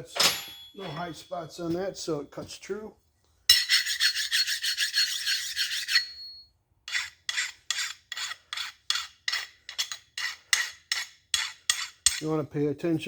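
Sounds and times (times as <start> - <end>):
hand file rasping on steel: 3.5 - 12.3.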